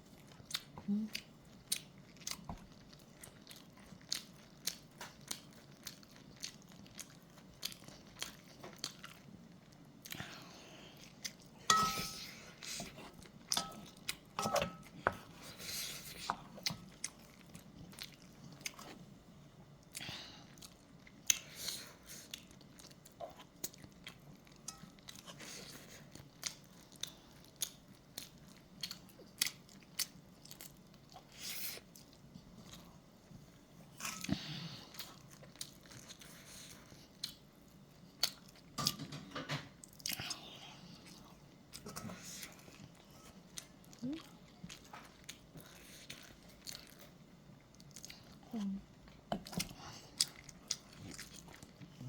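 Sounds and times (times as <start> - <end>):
chewing with mouth clicks: 0.0 - 19.2, 19.8 - 52.0
spoon clinking on dish: 11.7 - 12.2, 13.6 - 14.8.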